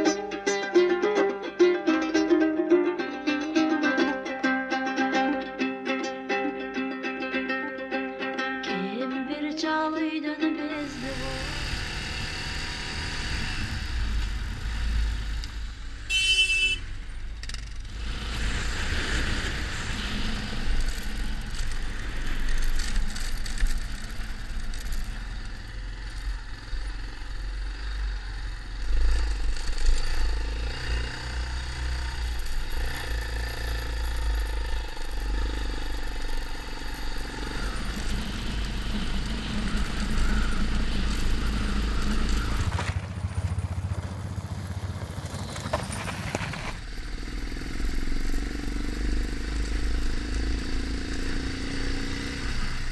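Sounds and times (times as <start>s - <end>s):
motorcycle engine rumbling: 10.8s - 52.9s.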